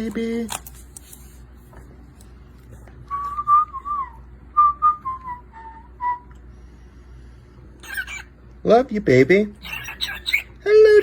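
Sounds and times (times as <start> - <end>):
cockatiel whistling: 9.6 - 10.5.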